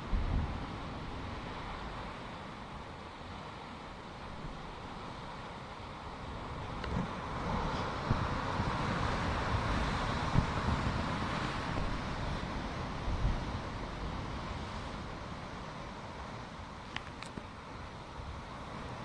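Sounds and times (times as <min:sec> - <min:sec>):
wind buffeting microphone: 0:06.7 - 0:15.2.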